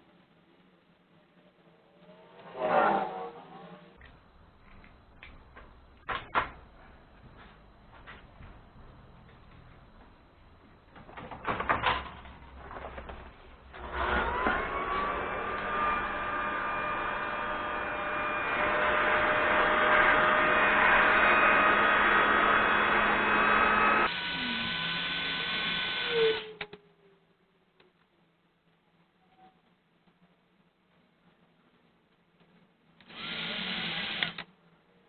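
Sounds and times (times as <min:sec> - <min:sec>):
small electric motor whine: 0:22.2 - 0:26.6.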